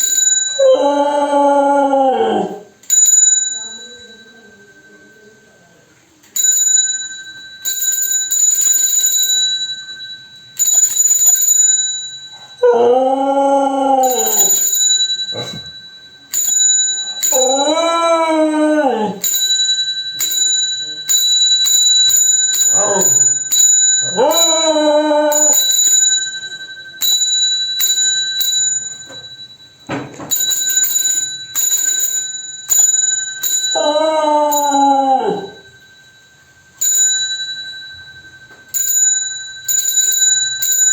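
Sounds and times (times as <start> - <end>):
bicycle bell ringing: 0.0 - 0.8, 2.8 - 12.8, 14.0 - 40.9
dog howling: 0.6 - 2.7, 12.4 - 14.6, 17.3 - 19.3, 22.7 - 23.3, 24.1 - 25.7, 33.7 - 35.6.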